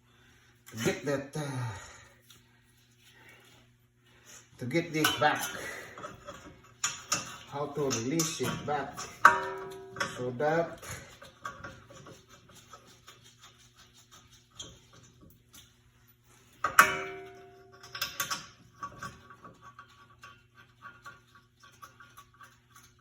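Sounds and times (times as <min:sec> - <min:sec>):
metal tools clicking and tapping: 0:04.8 - 0:13.6, 0:16.5 - 0:23.0
loud ringing metal clank: 0:07.9 - 0:10.4, 0:16.7 - 0:18.4.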